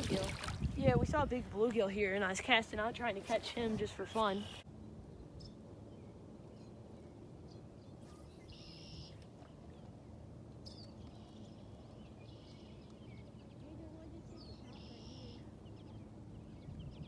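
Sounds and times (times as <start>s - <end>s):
bird chirps: 8.0s - 9.2s, 14.3s - 17.0s.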